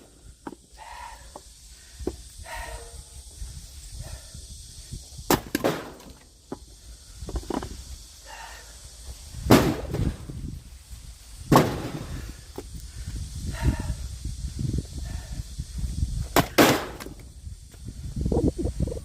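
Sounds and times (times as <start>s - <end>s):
axe splitting firewood: 5.3s - 6.2s.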